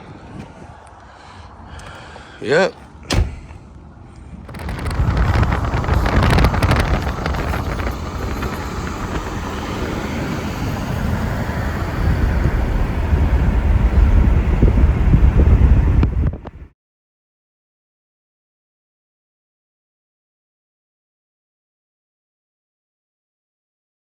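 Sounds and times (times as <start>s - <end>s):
wind buffeting microphone: 0.0s - 3.7s, 4.3s - 16.7s.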